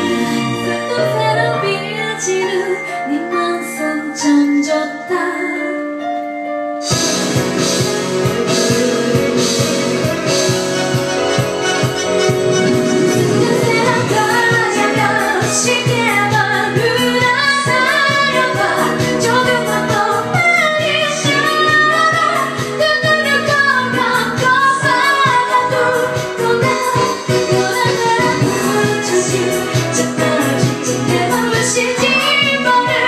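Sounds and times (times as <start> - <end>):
woman singing: 0.0 - 6.1, 13.0 - 33.0
pop backing track: 0.0 - 33.0.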